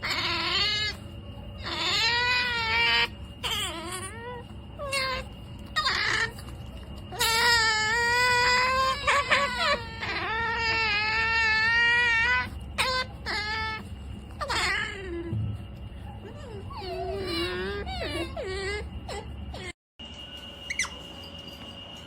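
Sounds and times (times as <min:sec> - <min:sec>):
otter whining calls: 0:00.0 - 0:15.4, 0:20.6 - 0:21.4.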